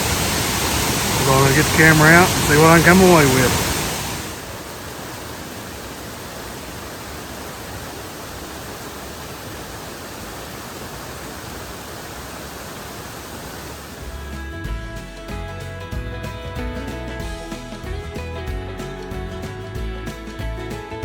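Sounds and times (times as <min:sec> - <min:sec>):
waterfall rushing: 0:00.0 - 0:14.2
guitar music: 0:14.0 - 0:21.0.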